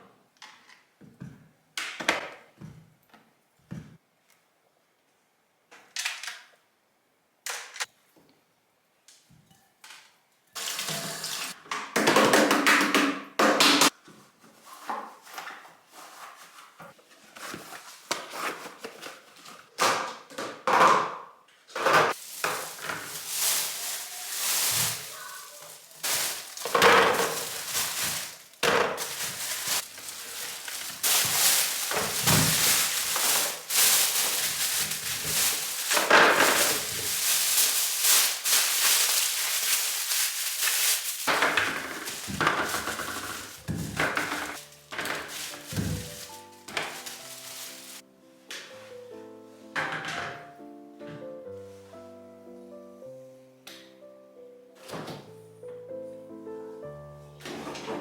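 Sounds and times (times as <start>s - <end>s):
dishes and containers clattering: 10.6s - 13.8s, 25.7s - 40.2s, 41.2s - 48.0s
rustling and scraping: 14.1s - 19.7s, 22.1s - 48.0s.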